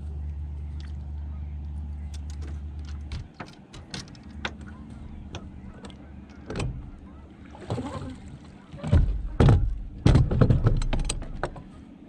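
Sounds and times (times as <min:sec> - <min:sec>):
boat motor running: 0:00.0 - 0:12.0
sharp clicks and knocks: 0:02.1 - 0:06.9, 0:08.9 - 0:11.7.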